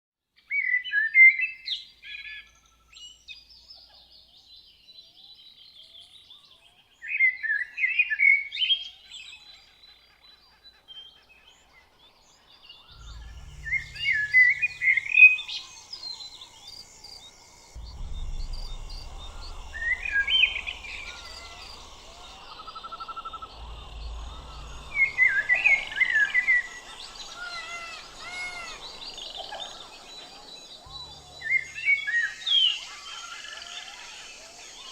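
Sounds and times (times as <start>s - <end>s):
low rumble: 12.9s - 33.2s
faint bird calls: 12.9s - 34.2s.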